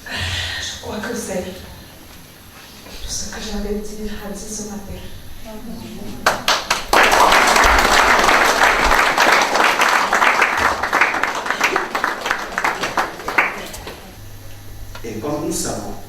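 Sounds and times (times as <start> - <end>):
congregation applauding: 6.2 - 14.2.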